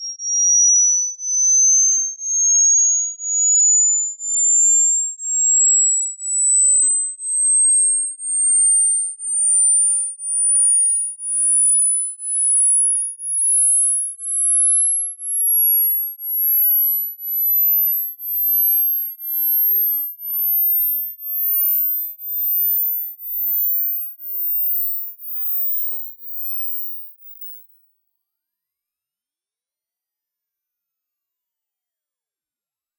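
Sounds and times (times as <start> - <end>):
high-pitched test tone beeps: 9.3 - 29.5.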